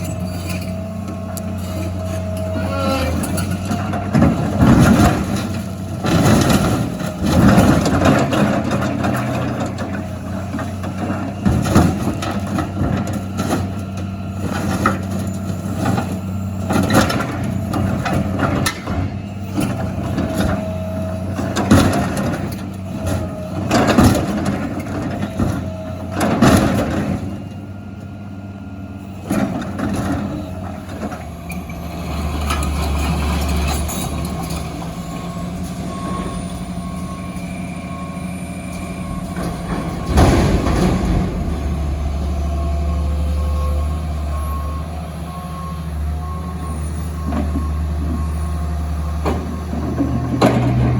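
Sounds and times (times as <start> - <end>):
metal dumpsters banging and crashing: 0.0 - 48.3, 49.0 - 50.9
diesel machinery running: 0.0 - 50.9
reversing alarm beeping: 34.1 - 49.5.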